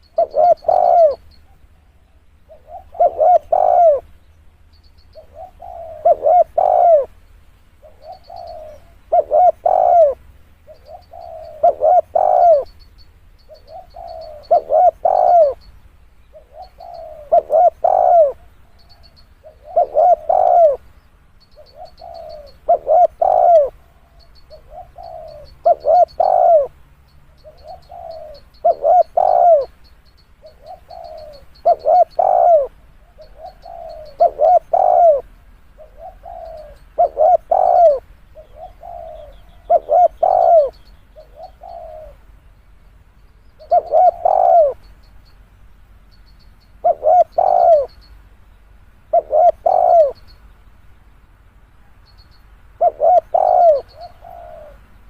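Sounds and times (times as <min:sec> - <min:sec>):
dove cooing: 0:00.0 - 0:04.1, 0:04.9 - 0:07.2, 0:07.8 - 0:12.8, 0:13.4 - 0:15.7, 0:16.3 - 0:29.8, 0:30.4 - 0:42.4, 0:43.5 - 0:45.0, 0:46.8 - 0:48.0, 0:49.0 - 0:50.4, 0:52.8 - 0:54.9.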